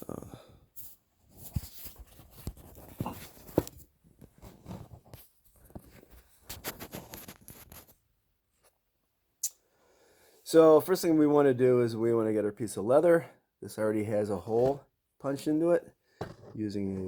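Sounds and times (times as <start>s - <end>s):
rustling of handled materials: 0.1s - 8.0s.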